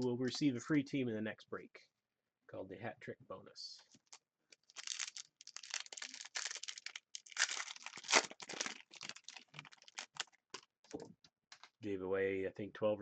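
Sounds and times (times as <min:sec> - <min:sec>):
plastic wrapping crinkling: 0:03.9 - 0:11.8.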